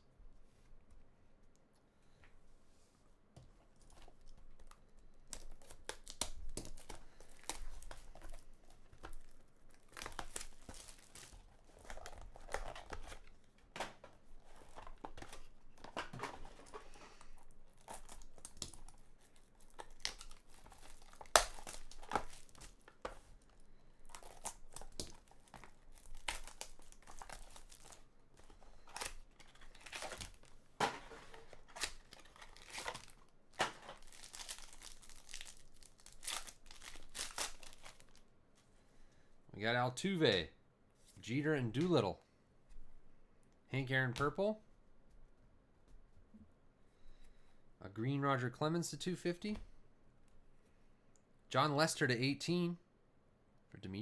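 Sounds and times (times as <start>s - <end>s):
plastic wrapping crinkling and tearing: 3.9s - 38.2s.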